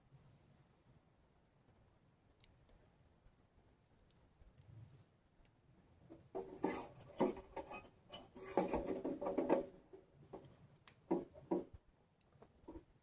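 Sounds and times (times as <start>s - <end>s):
metal scraping on metal: 6.4s - 9.7s.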